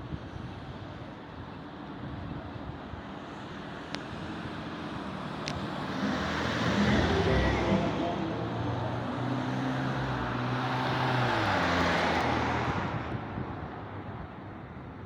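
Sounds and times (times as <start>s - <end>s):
vehicle engine passing: 5.1s - 12.2s.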